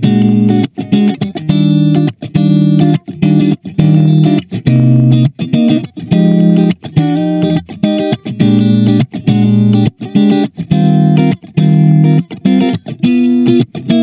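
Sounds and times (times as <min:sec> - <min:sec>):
electric guitar chords cut short: 0:00.0 - 0:14.0.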